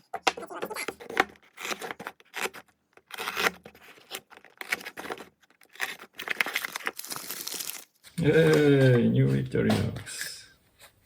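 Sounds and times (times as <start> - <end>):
packaging tearing and crinkling: 1.4 - 8.9.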